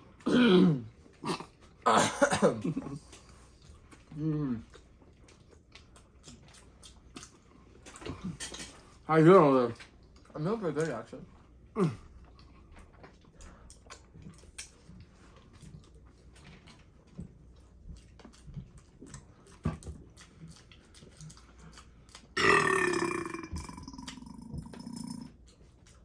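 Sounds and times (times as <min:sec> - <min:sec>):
person burping: 0:00.3 - 0:00.8, 0:22.4 - 0:25.3
eating clicks: 0:19.0 - 0:26.0.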